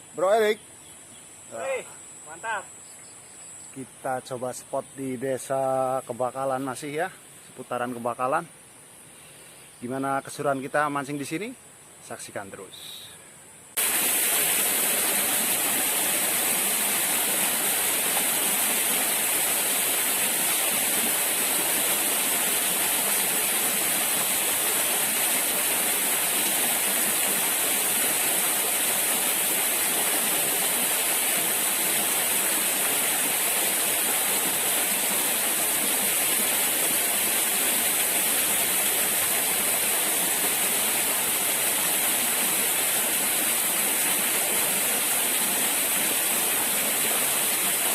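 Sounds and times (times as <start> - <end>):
rushing flowing water: 13.8 - 47.9.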